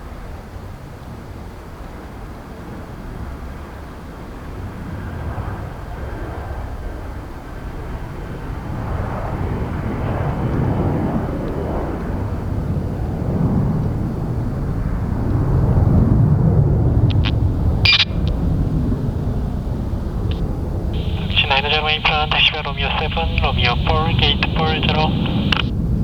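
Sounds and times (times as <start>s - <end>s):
jet engines rumbling: 12.3s - 26.0s.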